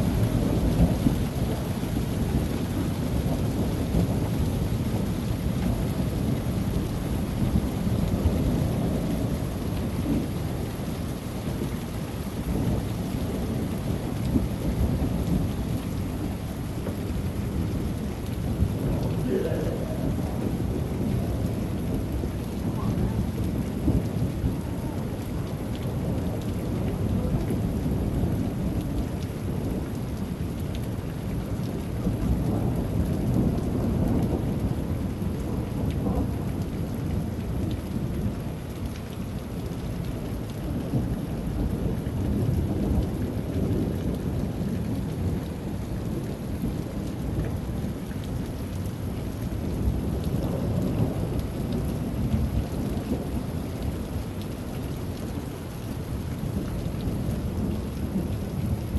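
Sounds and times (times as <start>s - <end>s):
rain falling: 0.0s - 58.9s
deep rolls of thunder: 17.5s - 25.3s.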